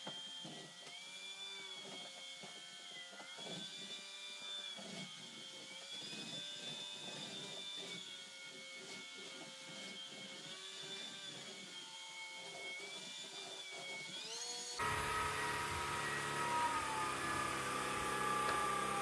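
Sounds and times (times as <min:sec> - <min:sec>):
stick vacuum high whine: 0:14.8 - 0:19.0.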